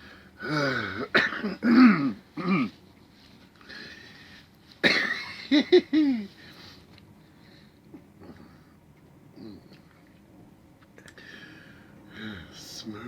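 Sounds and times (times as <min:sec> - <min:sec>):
man coughing and groaning: 0:00.4 - 0:02.7, 0:04.8 - 0:06.3.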